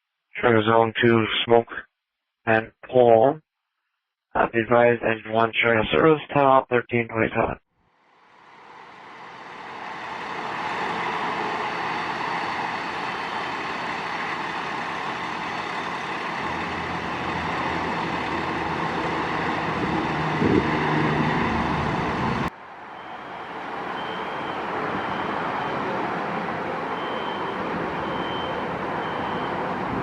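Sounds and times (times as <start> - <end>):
fire truck engine droning: 8.0 - 30.0.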